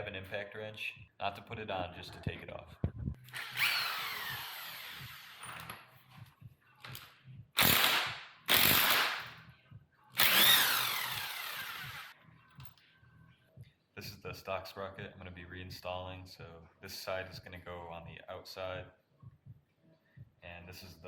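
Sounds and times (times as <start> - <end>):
impact wrench bursts: 3.2 - 5.8, 7.6 - 9.4, 10.2 - 12.1.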